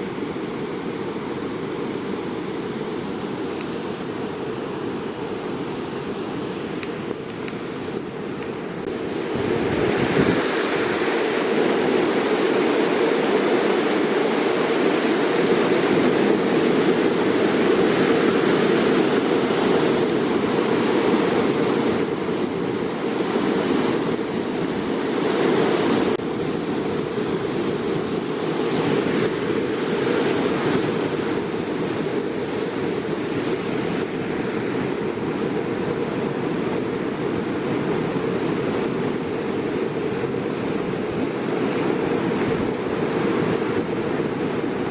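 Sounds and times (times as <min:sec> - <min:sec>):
waterfall rushing: 0:08.7 - 0:20.5.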